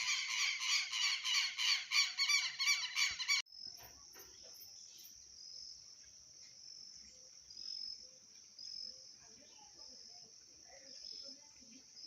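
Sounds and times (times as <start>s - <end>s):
harsh bird calls: 0.0s - 3.4s.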